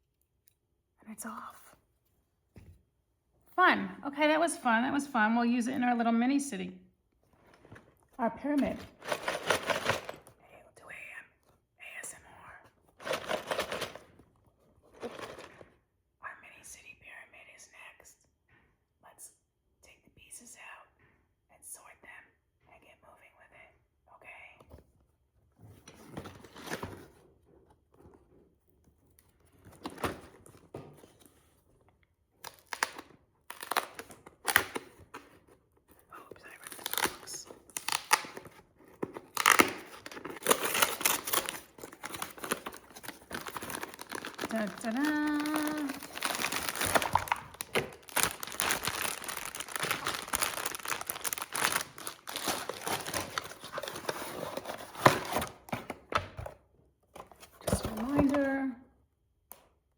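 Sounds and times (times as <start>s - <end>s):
cardboard rustling and tearing: 8.8s - 10.3s, 13.0s - 14.1s, 36.6s - 55.9s.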